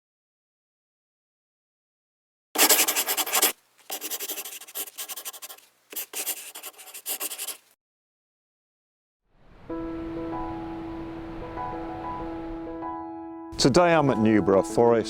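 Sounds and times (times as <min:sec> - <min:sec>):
scratching and rubbing: 0:02.6 - 0:07.7.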